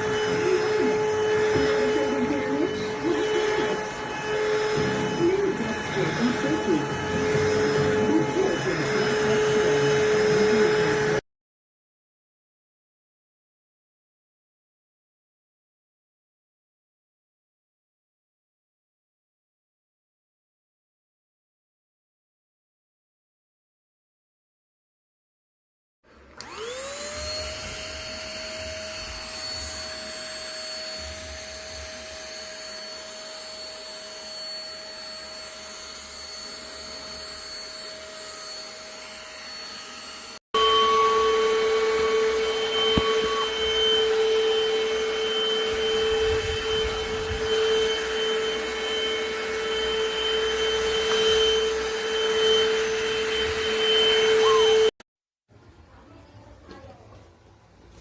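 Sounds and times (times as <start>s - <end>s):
vacuum cleaner motor whining: 0.0s - 11.2s, 26.2s - 55.0s.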